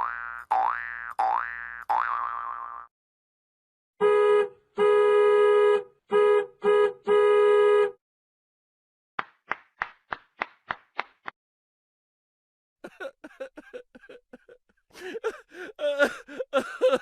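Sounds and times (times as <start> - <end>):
car horn honking: 4.0 - 8.0.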